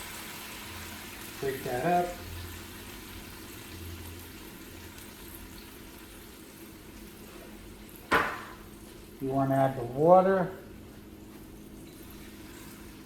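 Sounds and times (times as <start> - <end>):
food sizzling in a frying pan: 0.0 - 8.8, 11.8 - 13.0.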